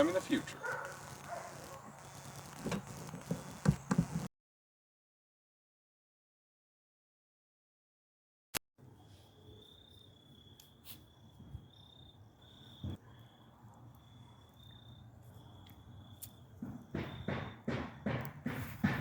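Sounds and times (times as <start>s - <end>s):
crickets chirping: 8.8s - 18.2s
knocks: 16.6s - 19.0s.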